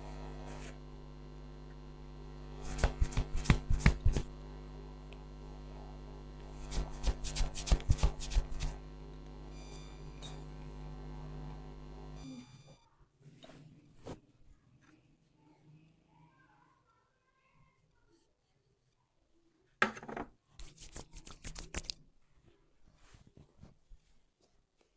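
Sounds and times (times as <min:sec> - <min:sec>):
steady electrical hum: 0:00.0 - 0:12.8
sharp hand slaps: 0:02.6 - 0:04.3.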